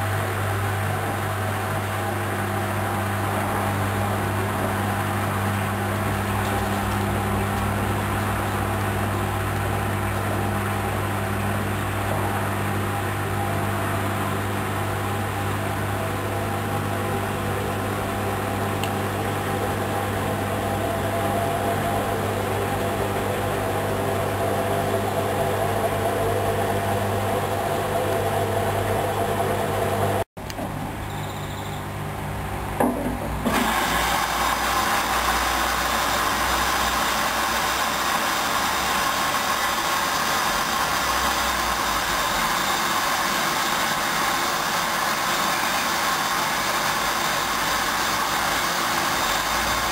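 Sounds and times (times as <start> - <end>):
washing machine running: 0.0 - 49.9
knock: 32.8 - 33.4.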